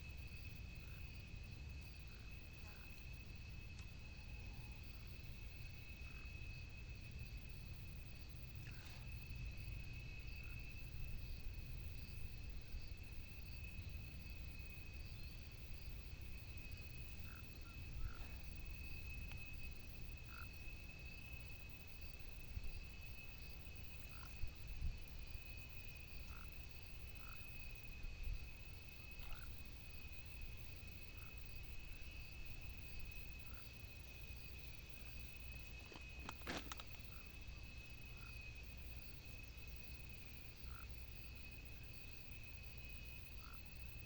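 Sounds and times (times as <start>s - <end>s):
frogs croaking: 0.0s - 44.0s.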